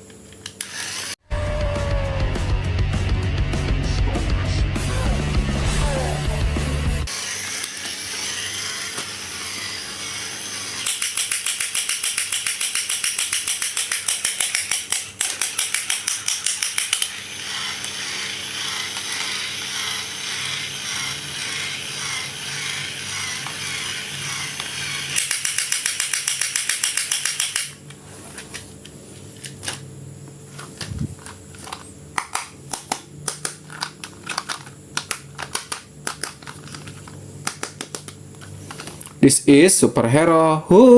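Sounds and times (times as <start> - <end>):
packaging rustling and scraping: 28.0 - 29.8, 30.4 - 31.9, 33.6 - 37.2.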